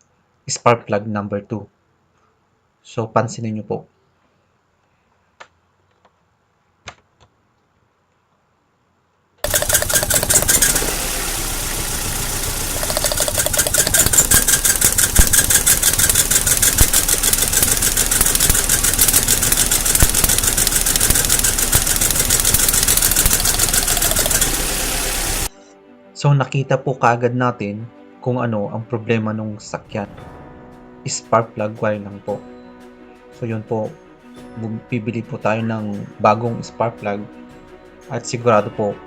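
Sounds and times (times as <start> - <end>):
car engine idling roughly: 9.4 - 25.5
fast even ticking: 9.4 - 25.5.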